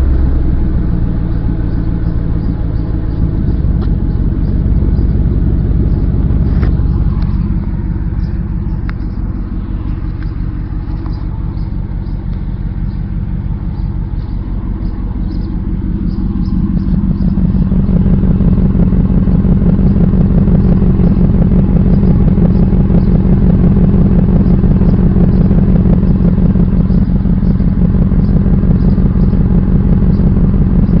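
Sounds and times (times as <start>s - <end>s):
pickup truck engine exhaust: 0.0s - 31.0s.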